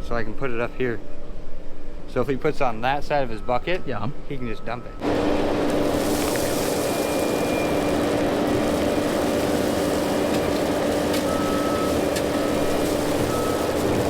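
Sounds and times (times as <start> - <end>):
diesel engine running: 5.0 - 14.0.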